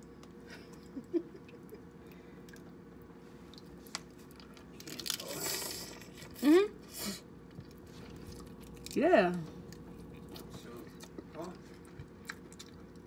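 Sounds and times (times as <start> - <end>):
faint hum: 0.0 - 13.0
person chewing: 7.5 - 9.0, 9.6 - 13.0.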